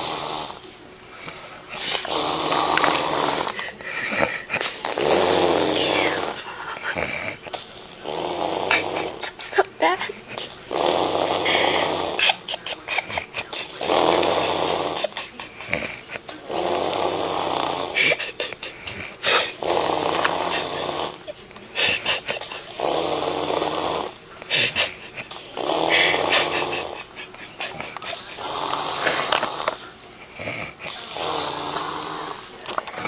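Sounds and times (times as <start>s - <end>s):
woman snoring heavily: 0.0s - 0.6s, 1.8s - 7.4s, 8.0s - 9.2s, 10.7s - 12.3s, 13.8s - 21.2s, 21.8s - 24.8s, 25.6s - 27.1s, 28.4s - 29.8s, 30.4s - 32.4s.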